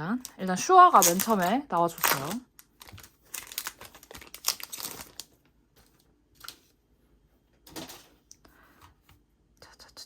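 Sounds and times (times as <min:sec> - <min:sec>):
paper and plastic rustling: 0:00.8 - 0:06.8.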